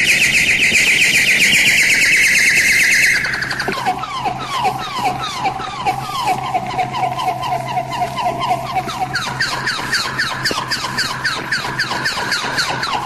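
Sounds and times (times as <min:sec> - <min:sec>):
eerie bird calls sliding down: 0:00.0 - 0:13.0
low steady hum: 0:00.0 - 0:13.0.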